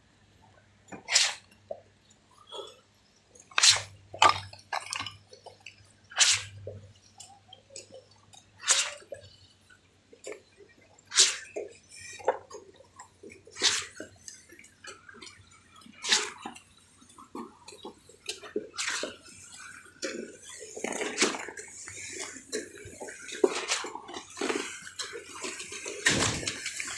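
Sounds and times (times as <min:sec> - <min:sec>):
concrete splashing whoosh: 0:06.1 - 0:06.6, 0:08.6 - 0:09.0, 0:26.0 - 0:26.9.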